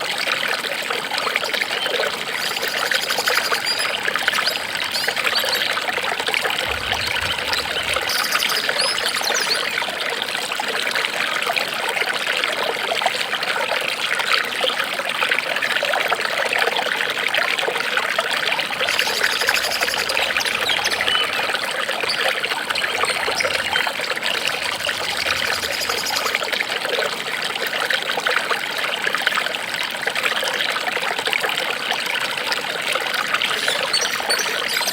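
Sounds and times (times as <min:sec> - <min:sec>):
water trickling over stones: 0:00.0 - 0:34.9.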